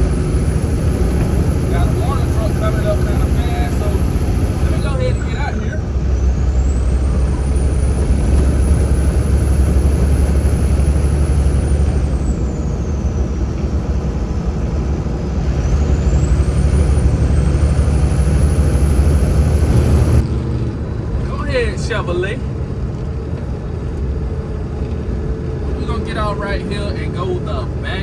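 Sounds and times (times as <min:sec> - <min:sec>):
truck engine and road drone: 0:00.0 - 0:28.0.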